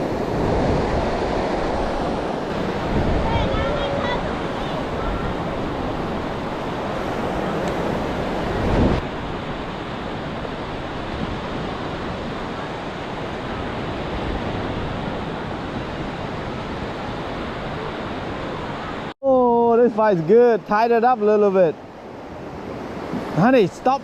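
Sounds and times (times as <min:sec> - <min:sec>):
wind on microphone: 0:00.0 - 0:19.1
ocean surf washing on beach: 0:00.0 - 0:24.0.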